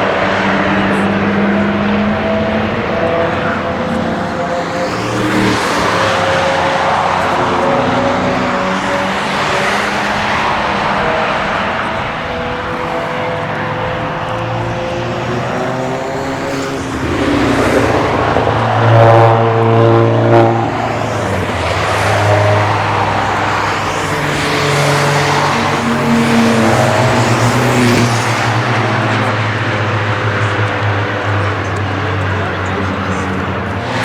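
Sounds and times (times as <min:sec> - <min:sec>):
car engine revving: 0:00.0 - 0:34.0
race cars driving past: 0:00.0 - 0:34.0.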